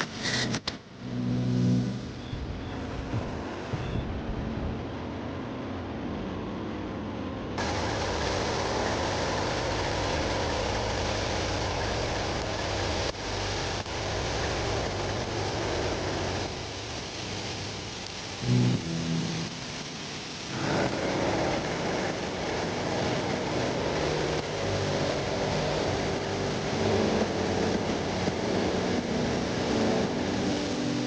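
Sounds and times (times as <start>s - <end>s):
lathe machine running: 7.6s - 17.4s, 18.4s - 31.0s.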